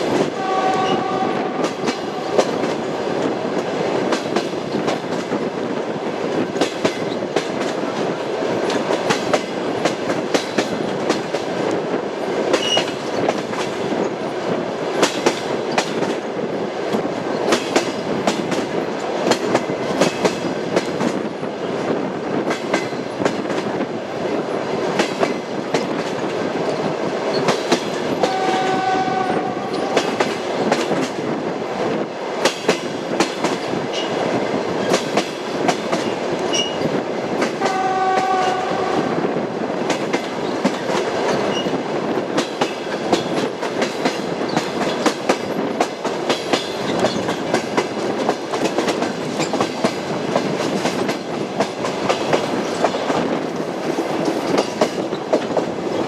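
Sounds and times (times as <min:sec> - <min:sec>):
train rumbling: 0:00.0 - 0:56.0
train horn tones: 0:00.3 - 0:02.7, 0:28.2 - 0:30.4, 0:37.6 - 0:39.2
wheels clacking over rail joints: 0:12.4 - 0:13.8, 0:39.8 - 0:56.0.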